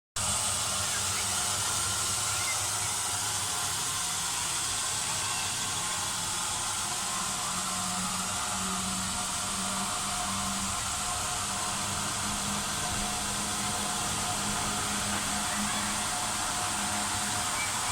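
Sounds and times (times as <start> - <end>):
abrasive belt hiss: 0.2 - 17.9.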